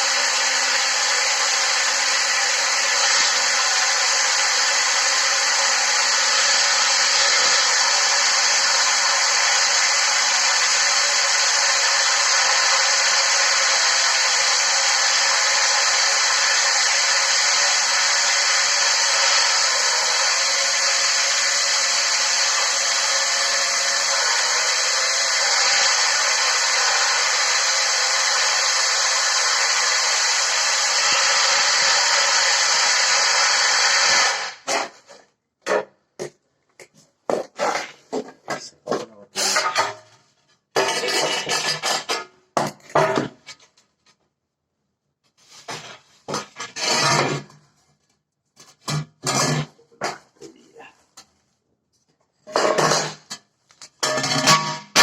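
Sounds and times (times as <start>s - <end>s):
electric drill whining: 0.0s - 34.7s.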